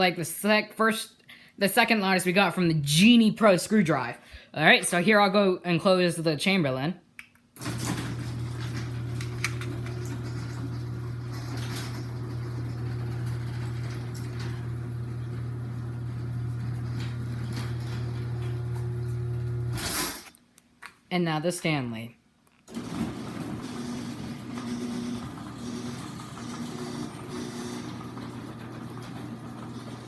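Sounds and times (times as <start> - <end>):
garage door clunk: 7.6 - 18.6, 22.7 - 30.0
garage door opener motor hum: 7.6 - 20.3, 22.7 - 30.0.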